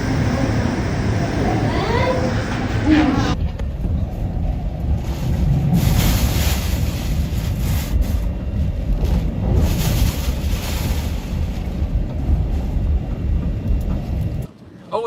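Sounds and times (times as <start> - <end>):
wind buffeting microphone: 0.0 - 14.5.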